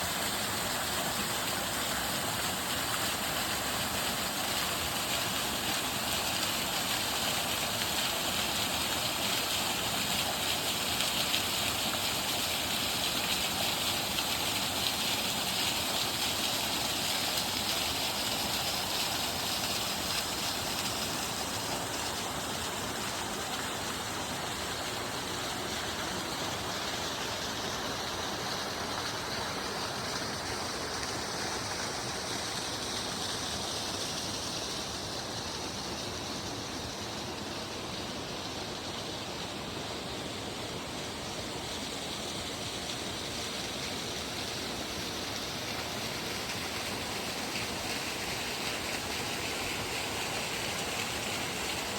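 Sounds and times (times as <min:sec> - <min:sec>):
waterfall rushing: 0:00.0 - 0:51.9.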